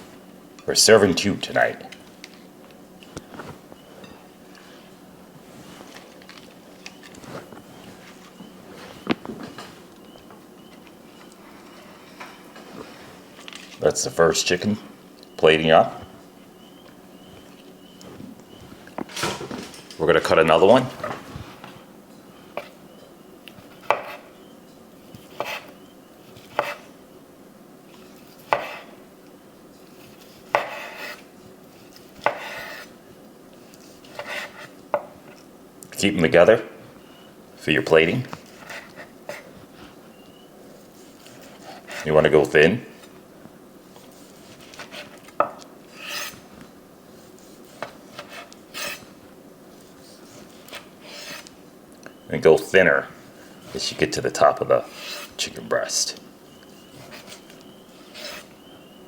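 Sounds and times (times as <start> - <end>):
knife sawing through meat: 54.9 - 55.4, 57.0 - 58.5.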